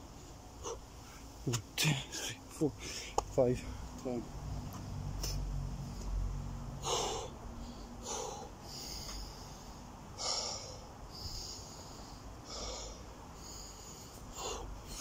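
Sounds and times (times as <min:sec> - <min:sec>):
man breathing hard: 0:06.8 - 0:15.0.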